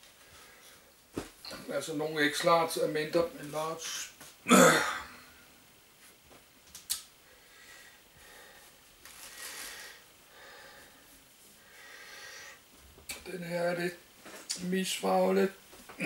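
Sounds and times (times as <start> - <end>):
clothes rustling: 8.2 - 10.0.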